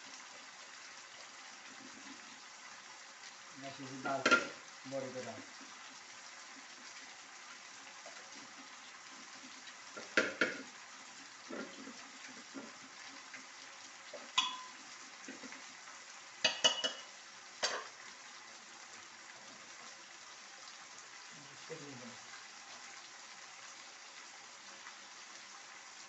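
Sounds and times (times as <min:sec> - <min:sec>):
steady sizzle: 0:00.0 - 0:26.0
metal clinks on pot: 0:14.4 - 0:14.8, 0:16.4 - 0:17.8.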